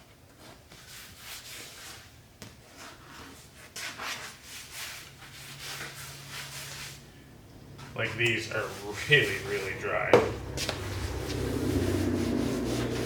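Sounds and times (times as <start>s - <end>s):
hand rubbing vinyl upholstery: 7.8s - 13.0s.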